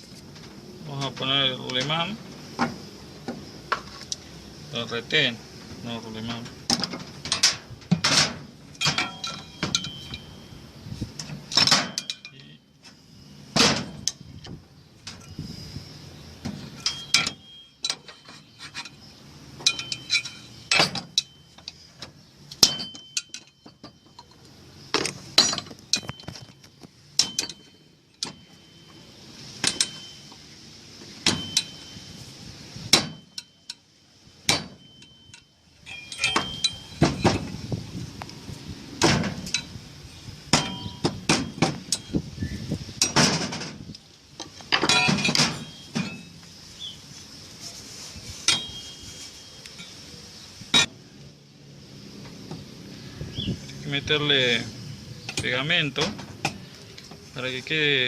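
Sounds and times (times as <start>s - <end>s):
metallic knocks and clinks: 6.2s - 10.4s, 11.2s - 12.5s, 16.5s - 19.0s, 19.6s - 21.8s, 22.5s - 29.0s, 29.6s - 30.5s, 31.2s - 32.0s, 32.9s - 37.6s, 40.5s - 42.3s, 44.4s - 46.5s, 48.5s - 49.0s
high metallic ringing tone: 8.7s - 10.8s, 11.9s - 13.4s, 16.7s - 21.9s, 22.6s - 37.6s, 39.4s - 42.6s, 44.8s - 47.0s, 48.4s - 51.1s.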